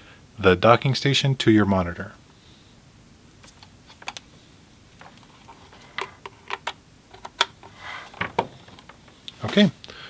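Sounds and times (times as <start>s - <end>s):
cable rustling: 3.4s - 10.0s.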